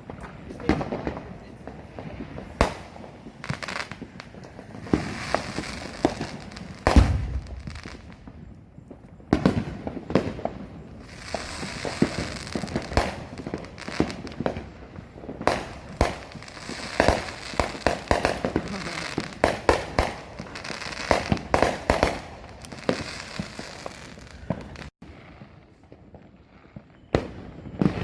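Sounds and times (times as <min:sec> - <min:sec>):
big firework booms: 0:00.0 - 0:08.5
fireworks bangs and crackling pops: 0:00.0 - 0:28.0.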